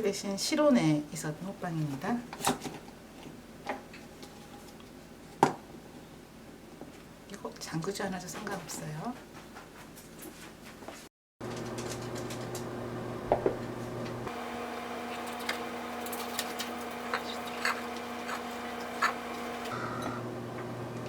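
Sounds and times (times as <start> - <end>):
microwave oven humming: 11.4 - 21.0.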